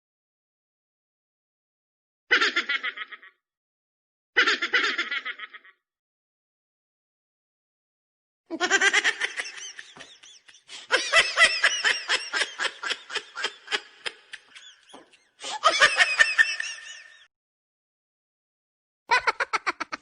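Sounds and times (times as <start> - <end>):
high-pitched rapid laughter: 4.4 - 5.8, 8.5 - 17.2.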